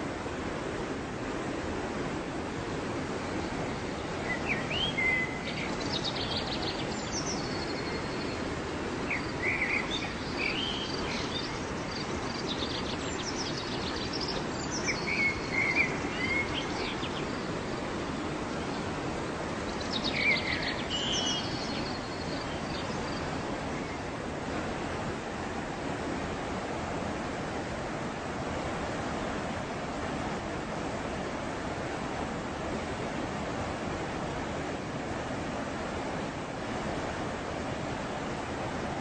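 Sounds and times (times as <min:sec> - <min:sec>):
waterfall rushing: 0:00.0 - 0:39.0
songbird chirping and trilling: 0:03.8 - 0:08.5, 0:09.1 - 0:17.7, 0:19.6 - 0:24.0.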